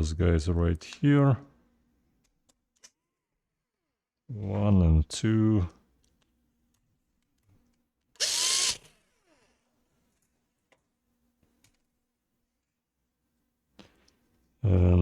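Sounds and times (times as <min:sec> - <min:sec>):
electric screwdriver whirring: 0:08.2 - 0:09.7.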